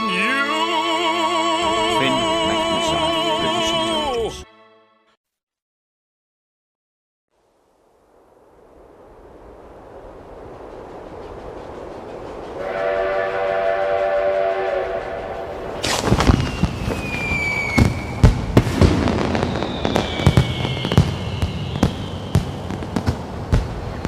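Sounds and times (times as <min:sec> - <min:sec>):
descending whistling tones: 0:12.6 - 0:23.2.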